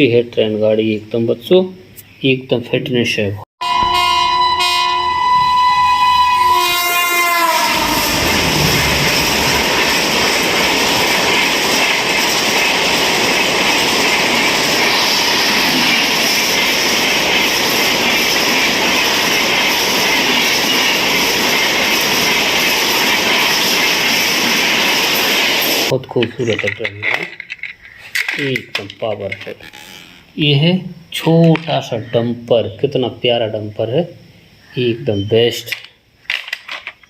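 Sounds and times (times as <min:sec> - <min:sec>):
train horn: 0:03.6 - 0:09.6
train running noise: 0:03.6 - 0:29.7.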